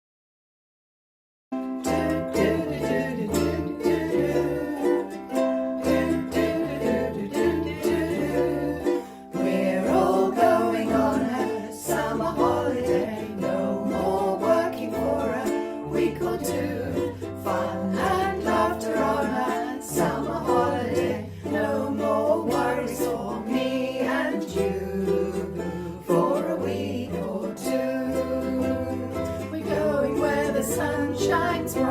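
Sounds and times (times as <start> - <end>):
strummed ukulele: 1.6 - 31.9
bass line: 9.5 - 31.9.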